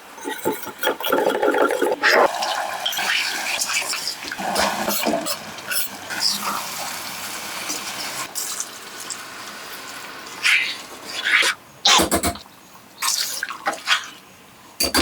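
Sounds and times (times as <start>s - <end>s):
water running and splashing: 2.2s - 11.3s.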